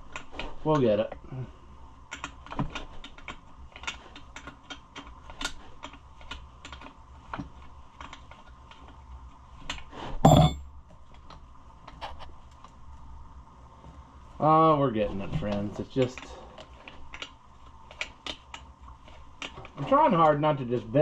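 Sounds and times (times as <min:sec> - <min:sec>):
small clicks and taps of parts: 0:02.1 - 0:09.0, 0:15.5 - 0:20.4
louder clunk: 0:10.3 - 0:10.6.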